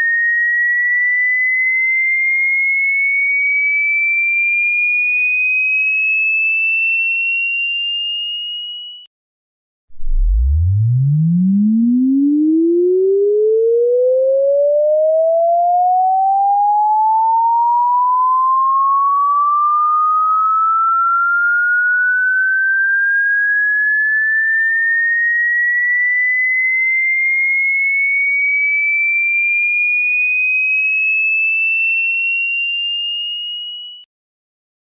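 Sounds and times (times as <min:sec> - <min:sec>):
sine tone gliding upward: 0:09.9 - 0:26.8.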